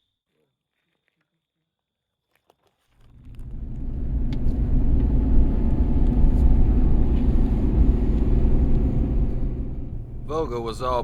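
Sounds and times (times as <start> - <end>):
vehicle engine and road noise: 3.0 - 11.0.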